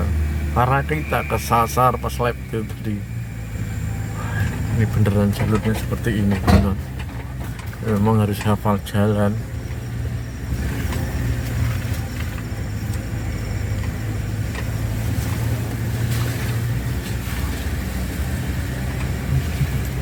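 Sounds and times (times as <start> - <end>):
vehicle engine running: 0.0 - 20.0
light knocks and rattles: 4.4 - 8.6.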